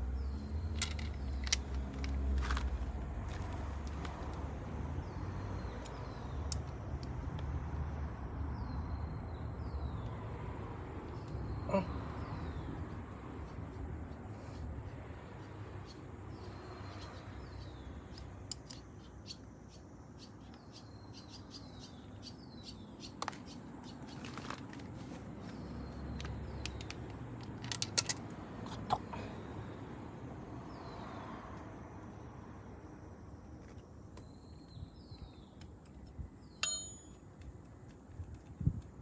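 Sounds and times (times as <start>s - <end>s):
clicks of hand tools and parts: 0.7s - 4.3s, 26.2s - 28.9s
birds chirping: 7.9s - 27.4s, 32.0s - 38.5s.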